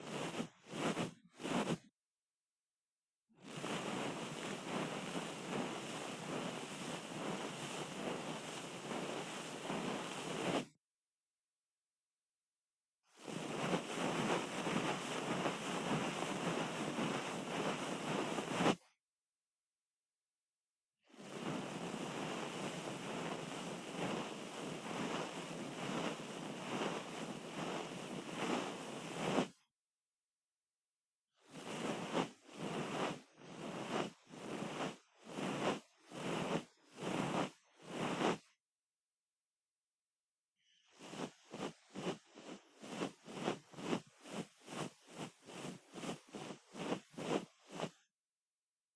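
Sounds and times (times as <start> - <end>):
rubbing swishes on microphone: 0.1 - 1.9, 3.5 - 10.8, 13.2 - 19.0, 21.5 - 29.7, 31.6 - 38.6, 40.9 - 48.1.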